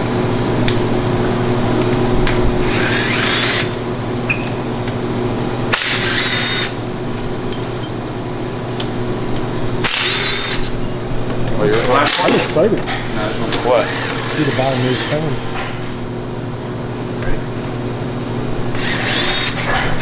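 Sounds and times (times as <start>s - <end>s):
shop hum: 0.0s - 20.0s
power tool high whine: 2.6s - 3.8s, 5.7s - 6.8s, 9.8s - 10.8s, 13.5s - 15.4s, 18.7s - 20.0s.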